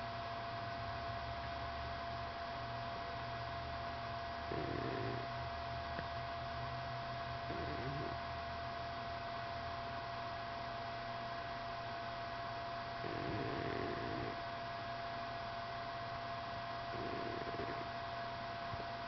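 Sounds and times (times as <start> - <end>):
electrical hum and hiss: 0.0 - 19.0
cat snoring faintly: 4.4 - 5.5, 7.4 - 8.3, 13.0 - 14.5, 16.8 - 18.1.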